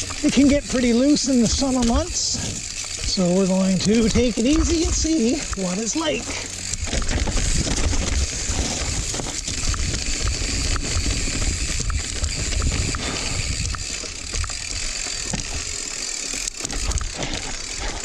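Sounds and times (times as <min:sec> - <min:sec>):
bike clicks and rattles: 0:00.0 - 0:18.0
bike tyres rumbling on dirt: 0:00.0 - 0:18.0
wind on microphone: 0:06.8 - 0:14.5.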